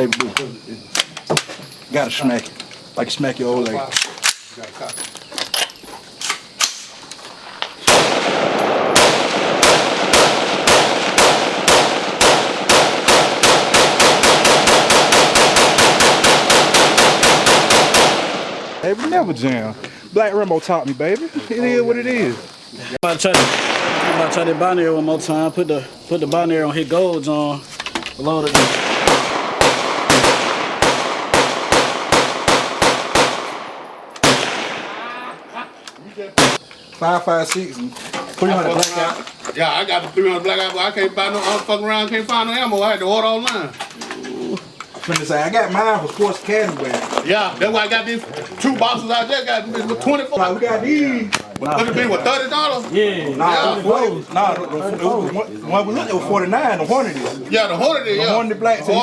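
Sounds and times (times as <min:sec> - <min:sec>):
rifle handling clicks: 0:03.6 - 0:04.6
rifle shots: 0:07.8 - 0:18.8, 0:23.3 - 0:25.1, 0:28.5 - 0:35.2, 0:36.4 - 0:36.7
rapid gunshots with ringing: 0:07.9 - 0:18.8, 0:23.3 - 0:24.9, 0:28.5 - 0:35.1, 0:36.4 - 0:36.6.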